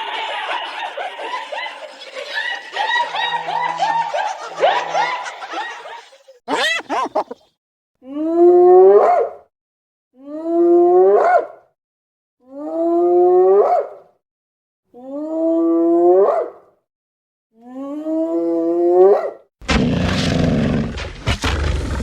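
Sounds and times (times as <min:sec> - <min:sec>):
hyena whooping call: 0:02.2 - 0:07.4.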